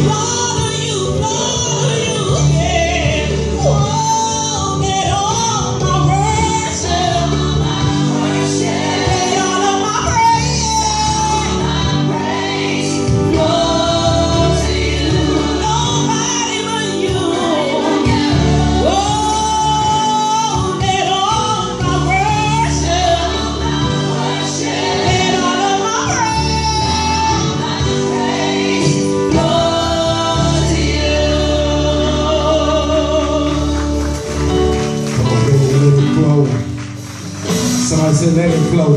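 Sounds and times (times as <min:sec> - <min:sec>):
lead singer with choir: 0:00.0 - 0:36.5
instrumental accompaniment: 0:00.0 - 0:38.9.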